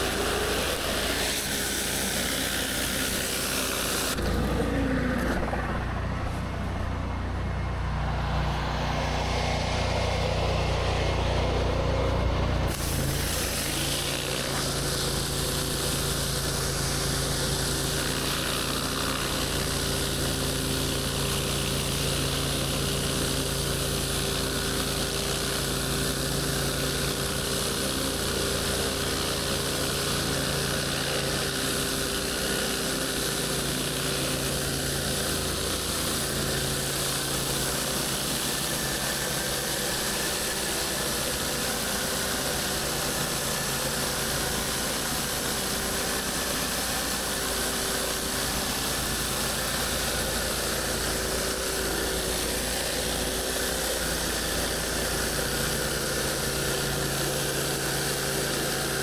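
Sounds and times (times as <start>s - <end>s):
high-pressure water spray hiss: 0.0s - 4.4s, 12.7s - 20.3s, 23.8s - 59.0s
pressure washer engine drone: 0.0s - 59.0s
steady tone: 4.1s - 12.7s.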